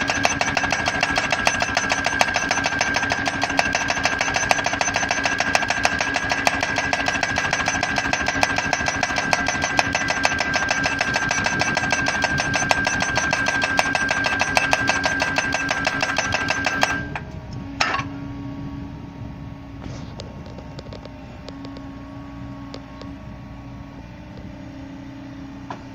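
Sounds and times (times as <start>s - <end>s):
pile driver hammering a post: 0.0s - 17.2s
machine engine running: 0.0s - 25.9s
steady machine whine: 0.0s - 25.9s.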